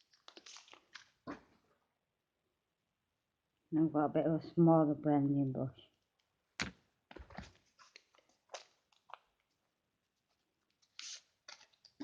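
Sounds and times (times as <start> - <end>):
packaging crinkling: 0.0 - 1.3, 7.1 - 9.6
soft packaging clicks: 6.2 - 9.6.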